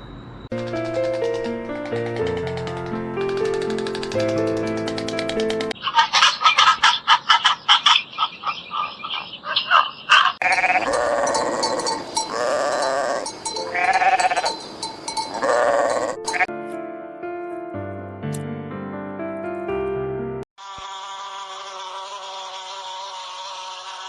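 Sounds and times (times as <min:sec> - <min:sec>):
farm animal bleating: 0:10.4 - 0:14.6, 0:15.3 - 0:16.5.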